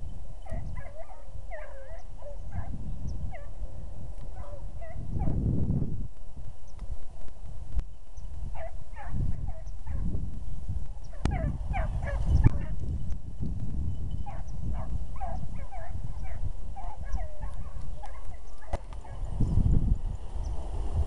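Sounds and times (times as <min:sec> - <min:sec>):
dogs baying and yelping: 0:00.4 - 0:03.6, 0:04.3 - 0:05.4, 0:11.1 - 0:12.8, 0:14.2 - 0:19.2.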